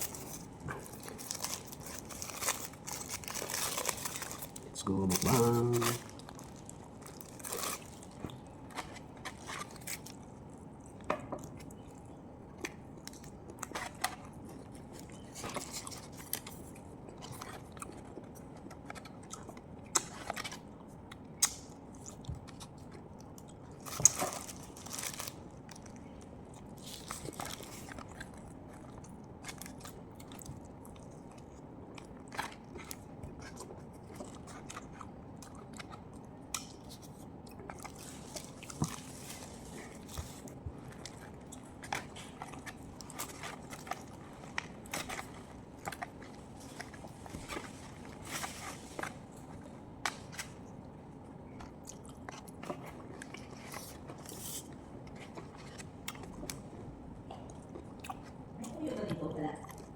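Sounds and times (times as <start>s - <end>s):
person chewing and crunching food: 0.0s - 58.9s, 59.5s - 59.9s.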